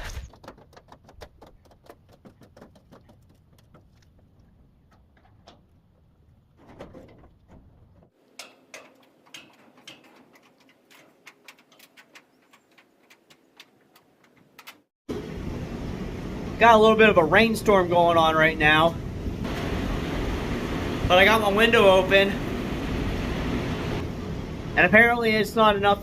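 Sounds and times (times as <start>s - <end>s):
faint clicks and ticks: 8.3s - 14.8s.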